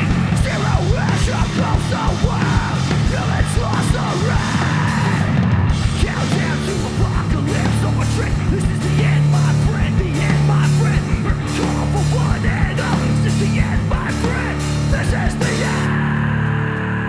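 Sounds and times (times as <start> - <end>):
fast dense drumming: 0.0 - 16.4
distorted guitars and bass: 0.0 - 17.0.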